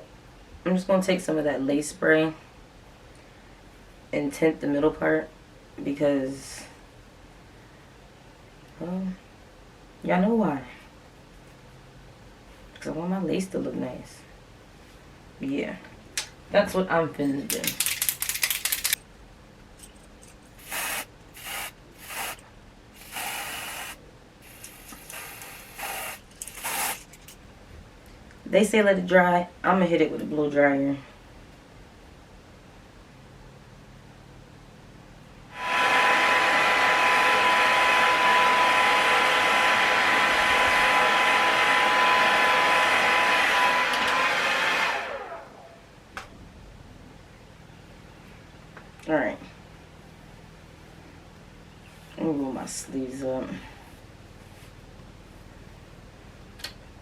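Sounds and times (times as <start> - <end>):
hair dryer running: 20.6 - 22.4, 23.0 - 26.2, 35.5 - 45.7
spray can hissing: 20.6 - 22.4, 23.0 - 27.3.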